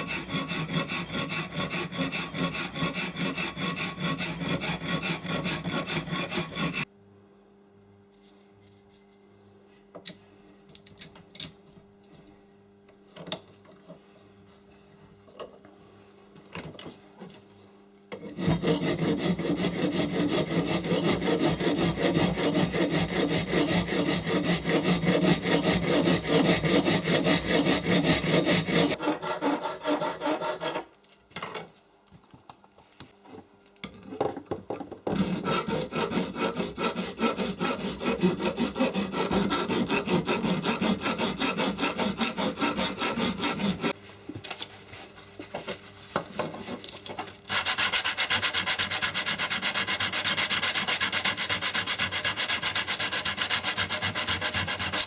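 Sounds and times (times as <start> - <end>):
abrasive sanding: 18.5 - 30.8, 47.5 - 55.0.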